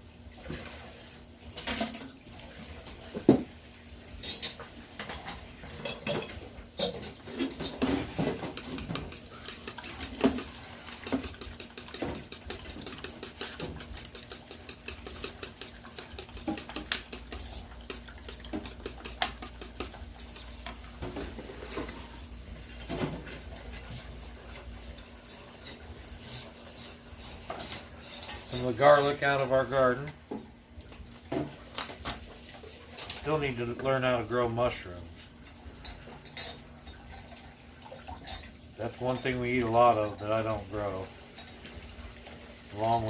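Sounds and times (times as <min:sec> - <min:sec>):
utensils clinking and scraping dishes: 0:01.5 - 0:02.1, 0:04.2 - 0:30.2, 0:35.4 - 0:37.1.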